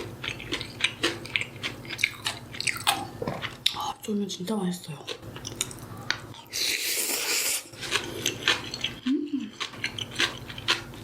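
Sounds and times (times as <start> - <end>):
wet chewing sounds: 0.0 - 4.2, 4.8 - 11.0
noodle slurping: 6.5 - 8.8.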